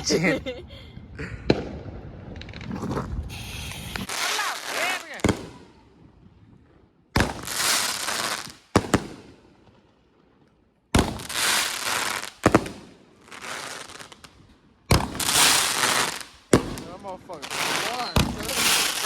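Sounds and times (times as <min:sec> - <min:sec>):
fireworks bangs: 0:01.4 - 0:06.2, 0:07.1 - 0:09.9, 0:10.9 - 0:14.3, 0:14.9 - 0:19.0
crackling hiss of fireworks: 0:02.4 - 0:06.0, 0:07.2 - 0:09.6, 0:11.0 - 0:19.0.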